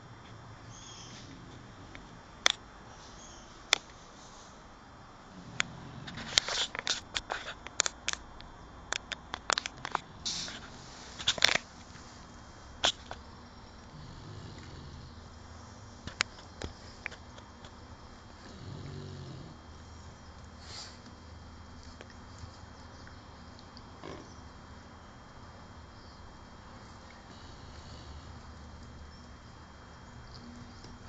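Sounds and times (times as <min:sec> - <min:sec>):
pet snoring: 0:05.3 - 0:06.5, 0:13.9 - 0:15.3, 0:18.4 - 0:19.7, 0:27.3 - 0:28.5
sharp clicks and crackles: 0:05.6 - 0:11.7.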